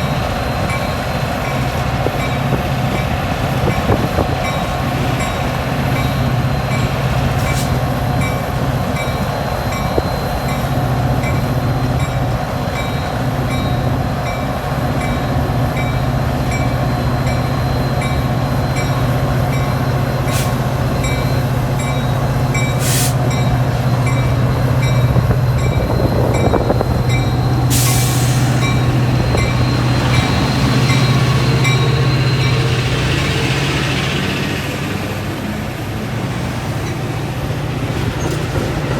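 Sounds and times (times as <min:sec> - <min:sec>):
diesel locomotive drone: 0:00.0 - 0:38.9
loud hiss: 0:22.8 - 0:23.4, 0:27.7 - 0:29.1.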